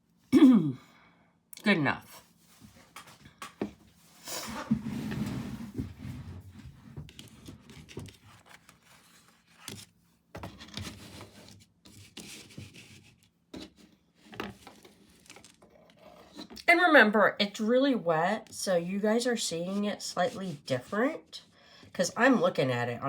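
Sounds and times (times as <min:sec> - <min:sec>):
paintbrush scraping over canvas: 0:03.9 - 0:07.3, 0:11.0 - 0:13.7, 0:19.6 - 0:21.3.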